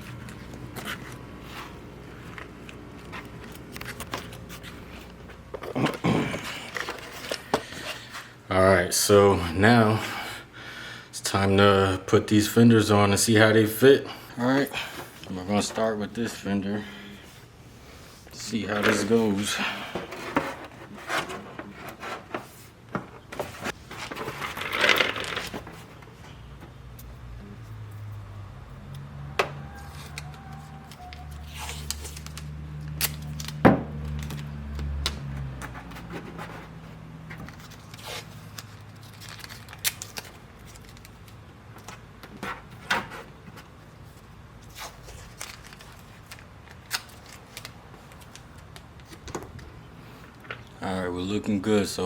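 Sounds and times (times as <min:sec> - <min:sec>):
tape pulled and torn: 0:29.9 - 0:35.2, 0:37.5 - 0:41.4.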